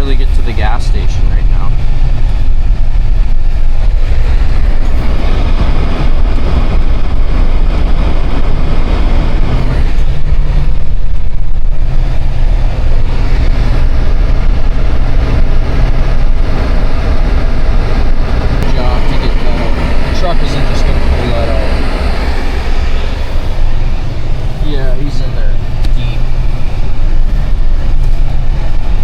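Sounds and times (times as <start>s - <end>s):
vehicle engine and road rumble: 0.0s - 29.0s.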